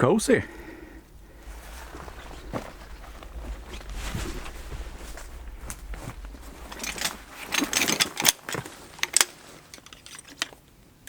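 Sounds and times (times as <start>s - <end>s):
rustling: 1.1s - 10.7s.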